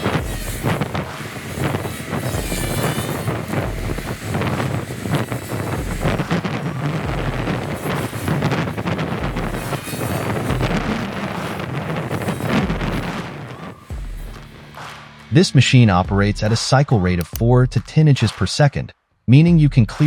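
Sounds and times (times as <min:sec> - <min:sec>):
wind buffeting microphone: 0:00.0 - 0:14.7
heavy machine running: 0:00.0 - 0:15.0.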